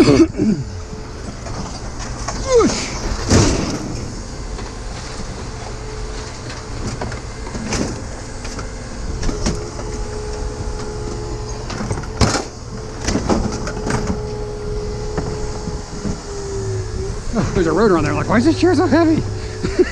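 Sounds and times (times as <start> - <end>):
steady hum: 0.0 - 19.9.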